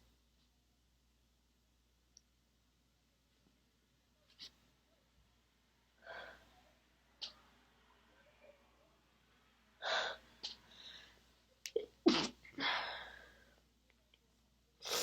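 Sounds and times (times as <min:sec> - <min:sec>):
breath: 0:06.0 - 0:06.5, 0:09.8 - 0:11.3
woman stifling sneezes: 0:12.1 - 0:12.4.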